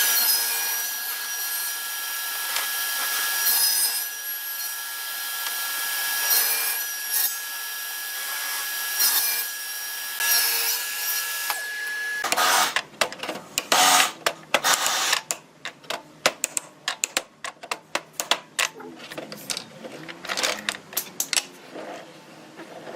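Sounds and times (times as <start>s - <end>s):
table saw cutting wood: 0.0s - 12.8s, 13.7s - 15.3s
sharp knocks and clicks: 12.3s - 19.7s.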